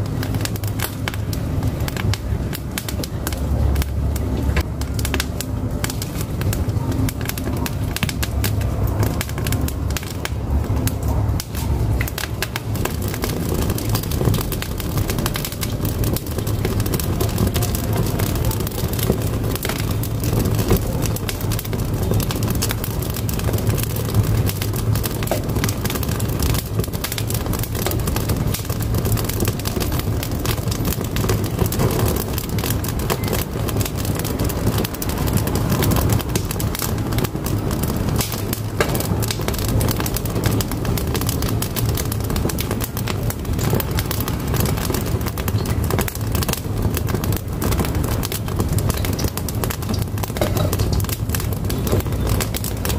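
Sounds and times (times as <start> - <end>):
fire crackling and popping: 0.0 - 52.9
fire rumbling: 0.0 - 52.9.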